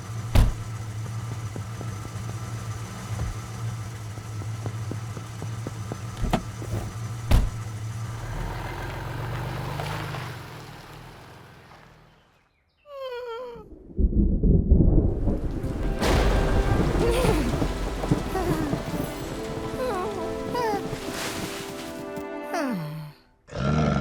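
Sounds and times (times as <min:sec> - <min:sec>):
low motor hum: 0:00.0 - 0:12.2, 0:13.7 - 0:21.8
sharp thumps: 0:00.2 - 0:07.8.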